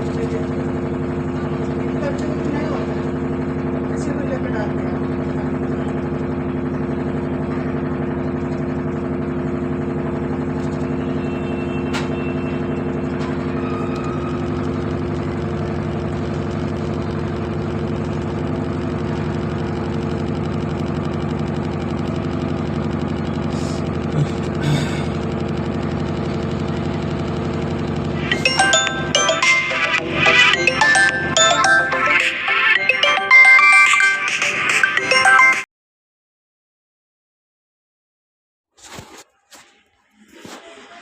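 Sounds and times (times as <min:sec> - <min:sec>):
washing machine motor hum: 0:00.0 - 0:32.1
fast vibrating rattle: 0:12.8 - 0:29.1.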